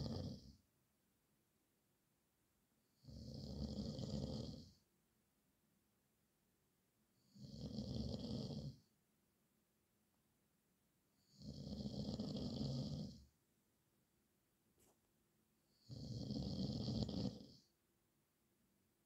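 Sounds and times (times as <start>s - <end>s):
man snoring: 0.0s - 0.5s, 3.0s - 4.7s, 7.3s - 8.8s, 11.3s - 13.2s, 15.8s - 17.6s.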